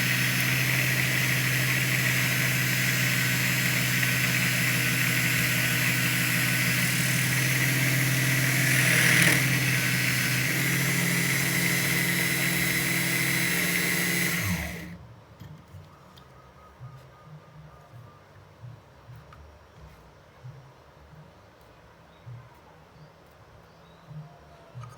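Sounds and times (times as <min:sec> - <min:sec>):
small electric motor running: 0:00.0 - 0:15.0.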